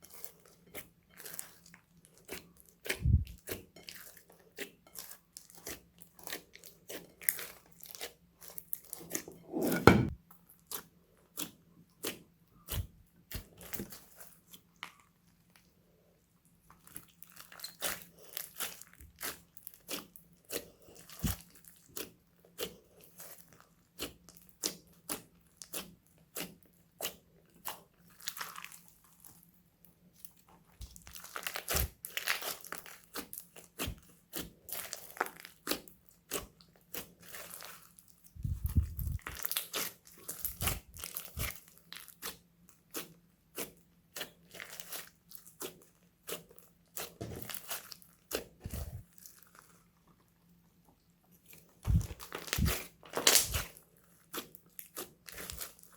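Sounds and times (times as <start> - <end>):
slime crackling pops: 51.9 - 53.7.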